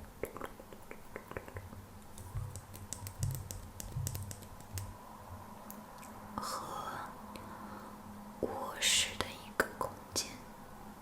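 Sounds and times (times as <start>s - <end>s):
fingernails tapping on hard objects: 2.2s - 4.9s
soft low thuds: 2.2s - 5.0s.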